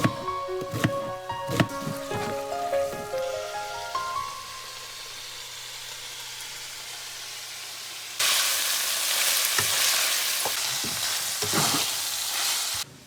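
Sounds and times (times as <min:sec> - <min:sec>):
stirring knocks and scrapes: 0:00.0 - 0:03.4, 0:10.4 - 0:12.0
meat sizzling in a frying pan: 0:03.3 - 0:12.9.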